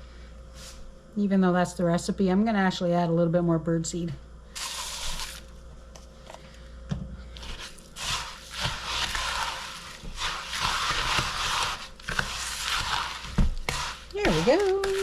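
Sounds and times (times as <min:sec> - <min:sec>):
gritty rustling of mixing in bowl: 0:07.3 - 0:15.0.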